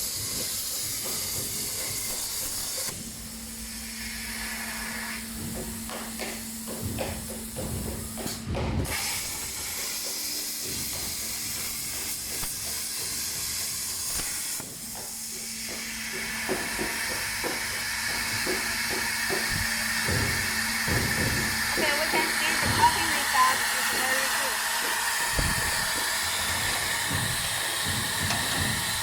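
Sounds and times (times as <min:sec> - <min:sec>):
plasma torch hissing: 0:00.0 - 0:29.0.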